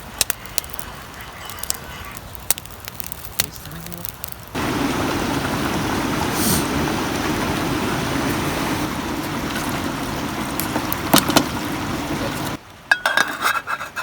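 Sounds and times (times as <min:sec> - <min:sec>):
campfire wood crackling: 0:00.0 - 0:14.0
river flowing: 0:04.5 - 0:12.9.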